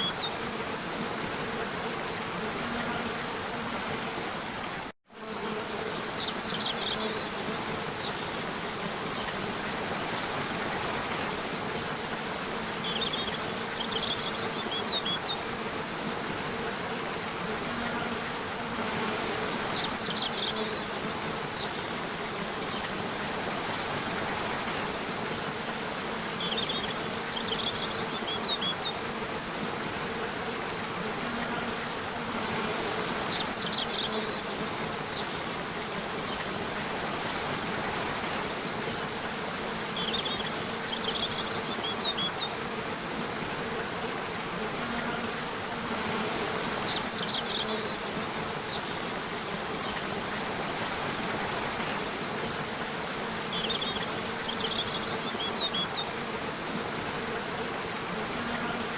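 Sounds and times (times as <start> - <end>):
bird chirping song: 53.5 - 56.1.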